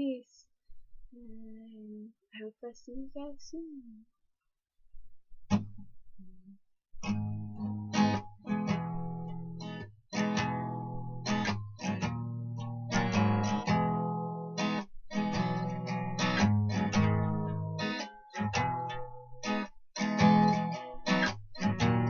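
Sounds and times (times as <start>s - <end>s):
acoustic guitar strumming chords: 5.5s - 22.0s.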